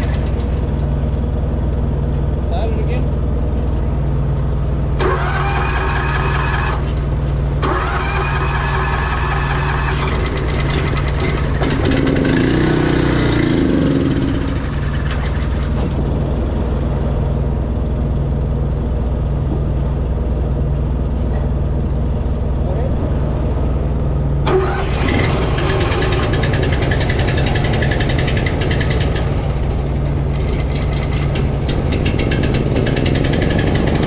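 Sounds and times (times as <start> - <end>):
motor starter cranking: 0.0 - 1.3, 5.0 - 12.5, 14.2 - 16.0, 24.5 - 34.0
engine idling: 0.0 - 34.0.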